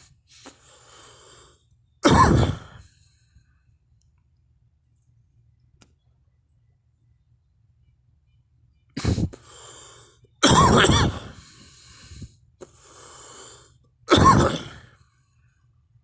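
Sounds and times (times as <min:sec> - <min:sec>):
person breathing: 0:00.0 - 0:01.7, 0:09.0 - 0:10.2, 0:11.3 - 0:13.8
person coughing: 0:02.0 - 0:02.8, 0:10.4 - 0:11.4, 0:14.1 - 0:14.9.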